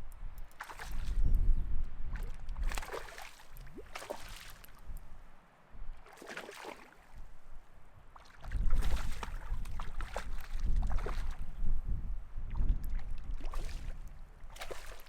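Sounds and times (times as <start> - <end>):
wind rumbling on microphone: 0.0 - 6.2, 7.0 - 15.0
water splashing and sloshing: 0.4 - 5.3, 5.9 - 11.7, 12.5 - 15.0.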